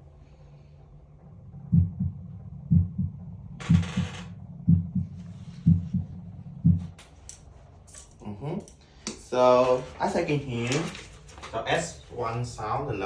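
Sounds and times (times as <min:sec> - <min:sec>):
heartbeat lub-dub: 0:01.2 - 0:07.0.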